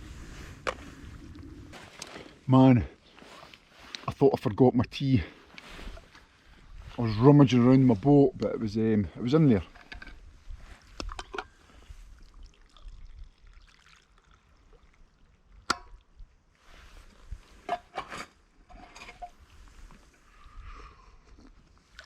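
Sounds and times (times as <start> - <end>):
tea pouring into a cup: 12.1 - 15.3.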